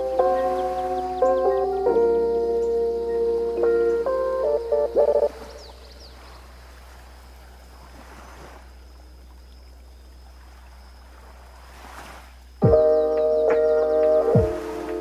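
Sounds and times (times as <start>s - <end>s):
sea waves washing onto beach: 0.0s - 2.1s, 5.2s - 8.9s, 10.3s - 12.6s, 13.3s - 15.0s.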